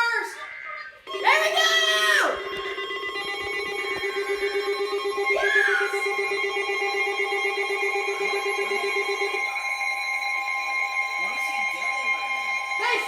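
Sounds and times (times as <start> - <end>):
warbling telephone-like ring: 1.0 - 13.0
high-pitched alert tones: 1.1 - 9.3.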